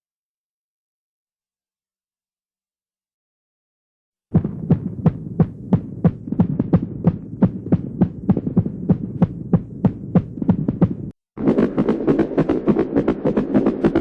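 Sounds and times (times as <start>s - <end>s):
sharp knocks: 4.3s - 14.0s
fast pulsing effect: 4.4s - 14.0s
low hum: 4.4s - 14.0s.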